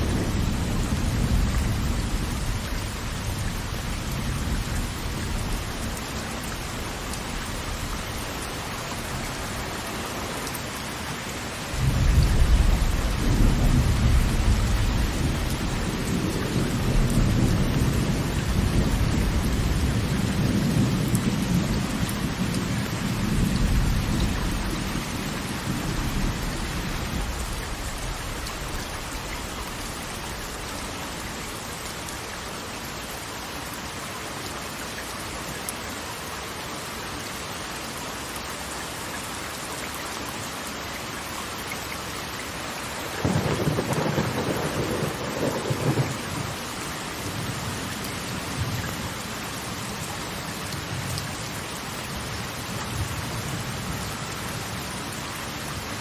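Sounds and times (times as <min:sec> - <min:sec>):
heavy rain: 0:00.0 - 0:56.0
rolling thunder: 0:11.8 - 0:28.7, 0:43.2 - 0:46.6.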